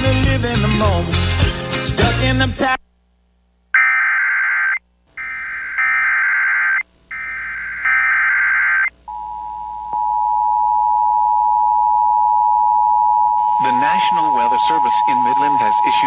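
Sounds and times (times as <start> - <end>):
buzzy data tone bursts: 3.8 - 8.9.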